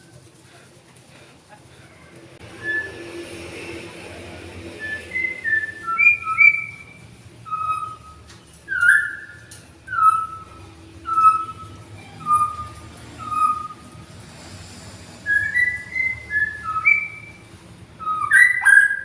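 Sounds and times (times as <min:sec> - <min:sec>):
songbird whistling: 0:02.5 - 0:03.1, 0:04.8 - 0:14.0, 0:15.2 - 0:19.0.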